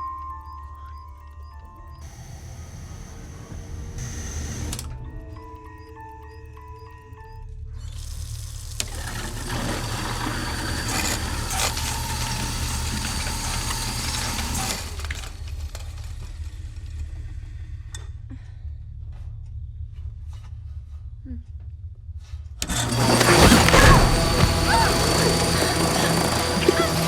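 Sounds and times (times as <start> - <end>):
garbage disposal grinding: 7.9 - 16.4, 22.6 - 27.0
clicks: 22.6 - 27.0.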